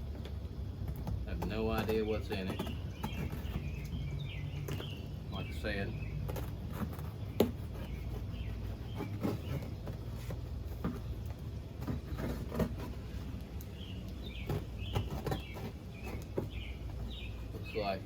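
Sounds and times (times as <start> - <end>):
cardboard rustles and scrapes: 4.7 - 13.6.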